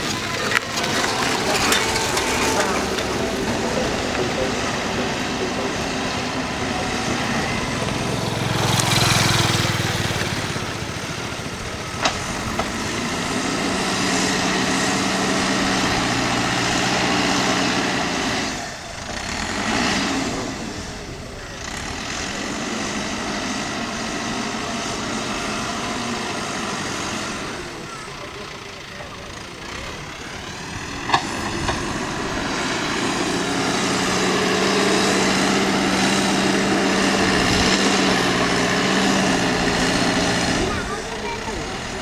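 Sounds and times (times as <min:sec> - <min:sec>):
excavator diesel engine running: 0:00.0 - 0:42.0.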